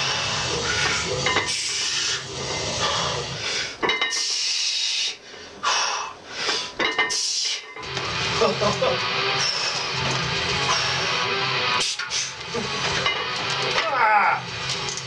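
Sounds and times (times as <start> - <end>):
person breathing hard and hissing: 0.0 - 7.7.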